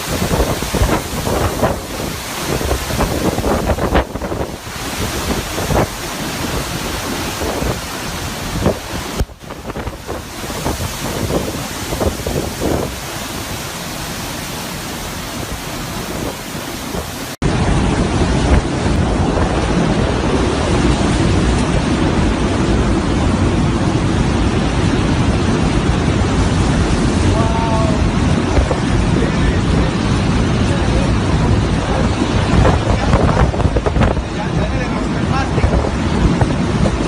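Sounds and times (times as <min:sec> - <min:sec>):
storm roar: 0:00.0 - 0:37.0
wind buffeting microphone: 0:00.0 - 0:37.0.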